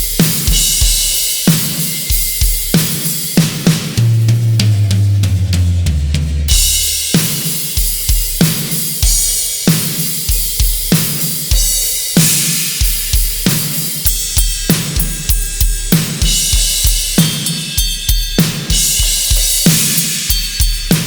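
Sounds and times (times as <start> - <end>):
bass drum and snare beat: 0.0 - 21.0
drum fill down the toms: 0.0 - 21.0
ringing cymbals: 6.5 - 10.5, 11.6 - 21.0.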